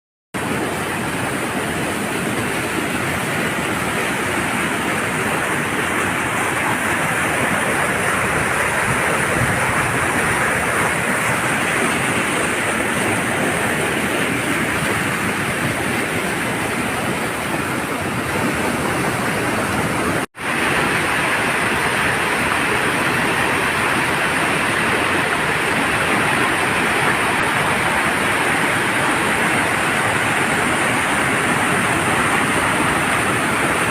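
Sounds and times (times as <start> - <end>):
waterfall rushing: 0.4 - 33.9.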